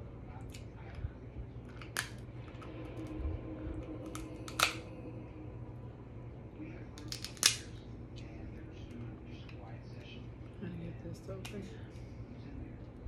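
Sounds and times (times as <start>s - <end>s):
crab shell cracking: 1.7s - 2.2s, 4.0s - 4.9s, 7.0s - 7.8s.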